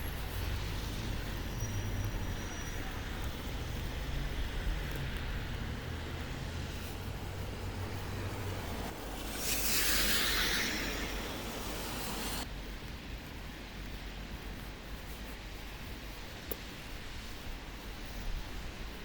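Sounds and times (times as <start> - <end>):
low engine hum: 0.0 - 9.4
tyres hissing on wet road: 0.0 - 19.0.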